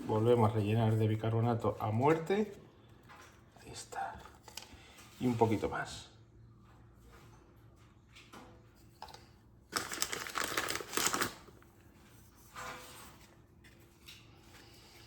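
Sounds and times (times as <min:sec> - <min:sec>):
powder rattling out of container: 0:09.7 - 0:11.6.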